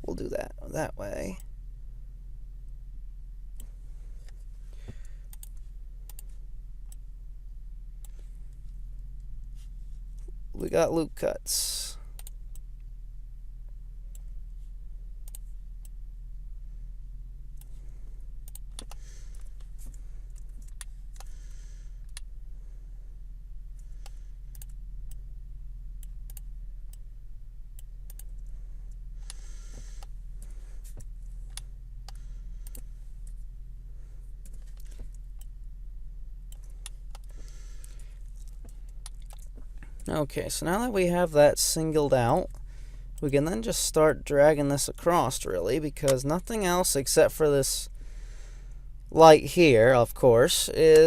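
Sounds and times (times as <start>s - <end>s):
low electrical hum: 0.0s - 51.0s
computer mouse clicks: 5.3s - 6.3s.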